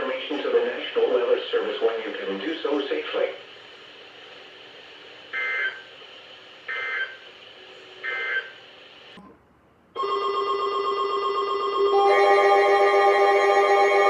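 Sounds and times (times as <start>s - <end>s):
steady electronic ringing tone: 10.0s - 14.0s.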